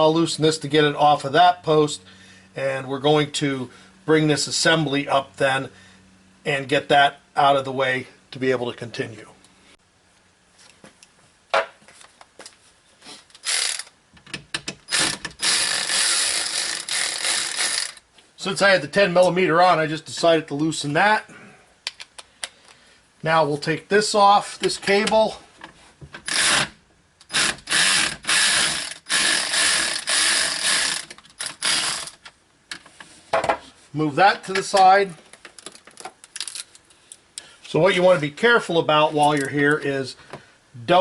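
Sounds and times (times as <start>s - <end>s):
ratchet wrench clicking: 13.4s - 14.0s, 14.9s - 18.0s, 26.3s - 32.2s.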